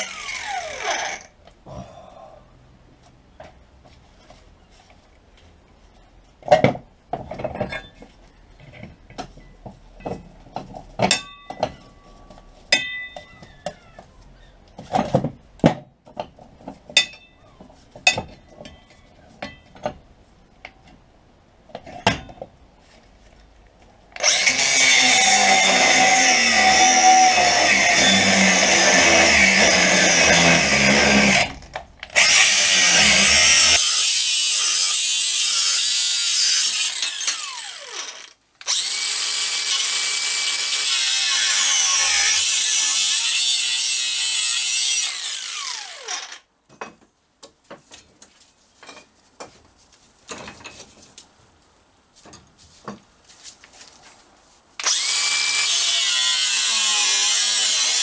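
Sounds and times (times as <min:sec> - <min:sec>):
power tool cutting steel: 0:00.0 - 0:01.3, 0:24.2 - 0:31.6, 0:32.2 - 0:46.4, 0:54.8 - 0:58.0.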